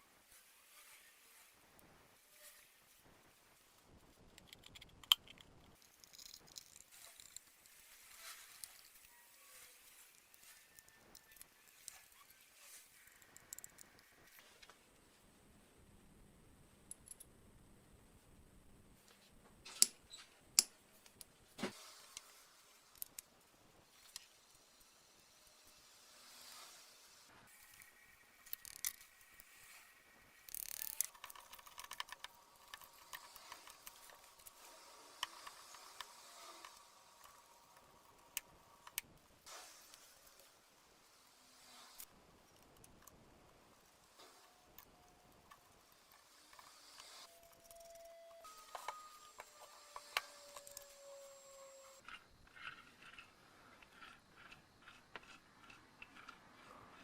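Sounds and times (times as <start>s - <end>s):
small parts clicking and rattling: 4.1s - 14.4s, 27.5s - 39.1s.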